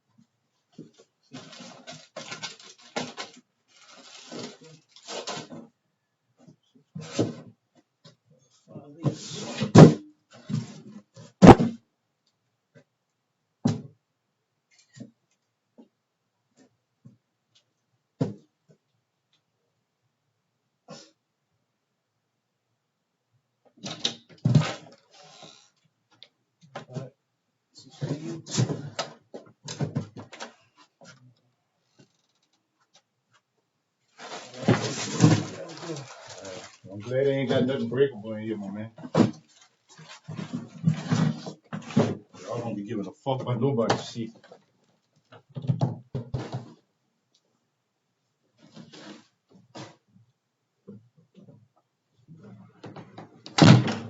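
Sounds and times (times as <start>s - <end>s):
heavy thuds of packages dropped: 34.5s - 36.0s.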